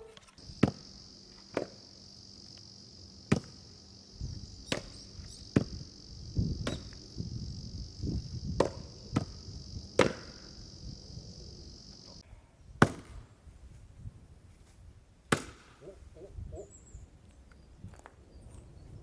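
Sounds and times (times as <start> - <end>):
insects chirring: 0.1 - 12.2
axe chopping wood: 1.5 - 1.8, 3.3 - 3.5, 8.6 - 9.3, 10.0 - 10.3, 15.3 - 15.7.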